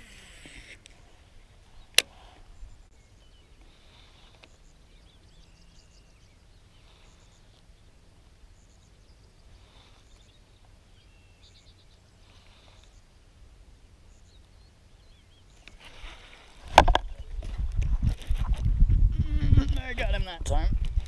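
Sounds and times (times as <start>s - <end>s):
small birds chirping: 0.2s - 15.8s.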